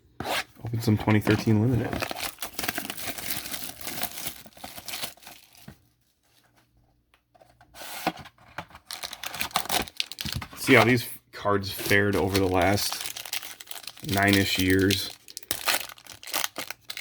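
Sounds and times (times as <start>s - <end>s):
packaging tearing and crinkling: 1.0s - 5.8s, 8.7s - 11.0s, 11.7s - 17.0s.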